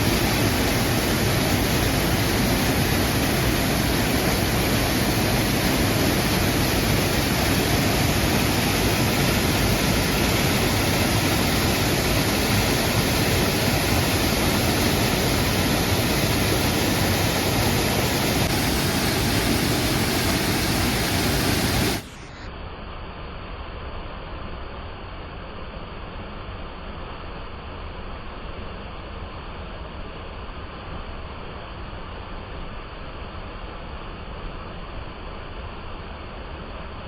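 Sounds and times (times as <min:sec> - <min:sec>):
waterfall rushing: 0:00.0 - 0:22.2.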